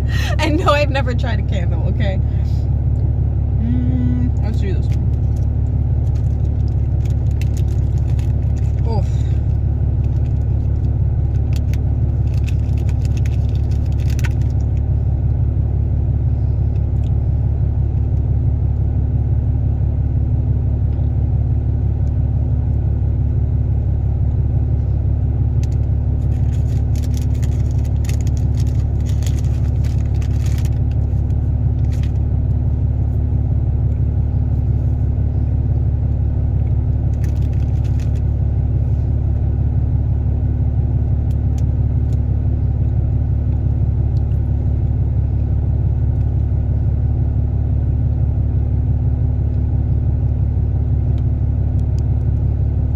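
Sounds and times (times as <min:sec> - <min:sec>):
steady low hum: 0:00.0 - 0:52.9
crackly cookie chewing: 0:05.0 - 0:14.8, 0:25.6 - 0:32.2.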